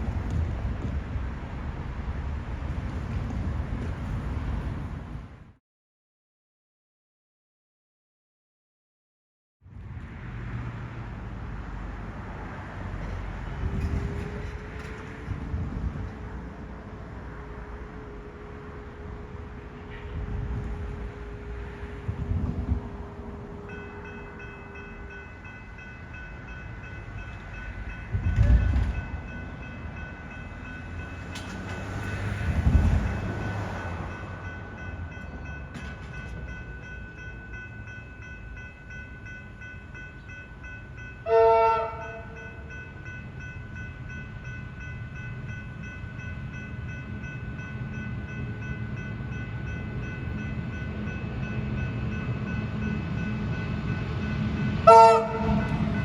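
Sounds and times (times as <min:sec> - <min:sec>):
train running with hum and whine: 0:00.0 - 0:05.6, 0:09.7 - 0:56.0
train horn blast: 0:17.4 - 0:23.8, 0:41.2 - 0:42.6, 0:54.8 - 0:56.0.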